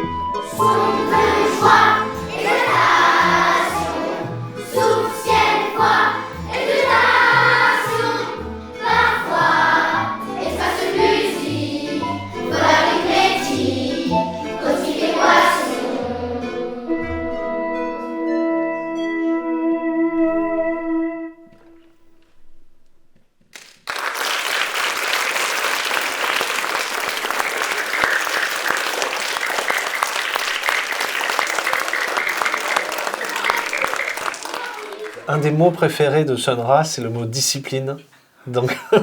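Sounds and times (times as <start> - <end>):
group of voices singing: 0.4 - 17.2.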